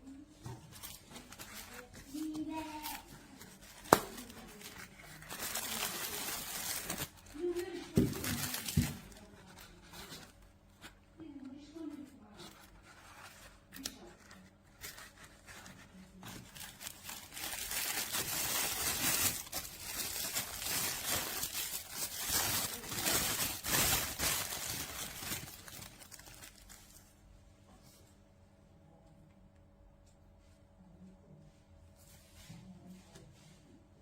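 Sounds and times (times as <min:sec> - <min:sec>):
wrapping material crinkling: 0:00.7 - 0:10.9, 0:12.5 - 0:27.1.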